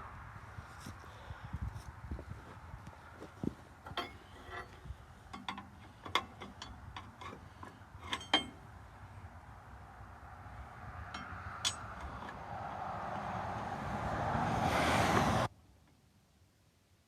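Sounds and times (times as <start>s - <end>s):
metal clinking and tapping: 3.8s - 8.7s, 11.1s - 12.4s.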